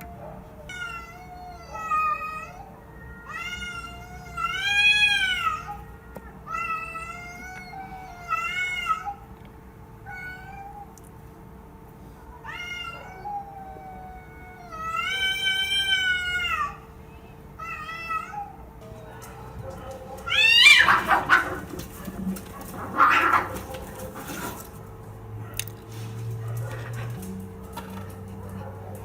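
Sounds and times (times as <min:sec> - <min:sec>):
cats meowing: 0:00.0 - 0:09.3, 0:10.0 - 0:11.0, 0:12.3 - 0:24.7.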